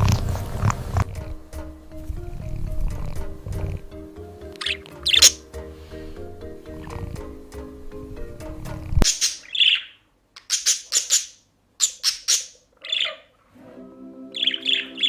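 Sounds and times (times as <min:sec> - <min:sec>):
background music: 0:00.0 - 0:09.2, 0:13.6 - 0:15.0
bird chirping: 0:00.0 - 0:13.4, 0:14.2 - 0:15.0.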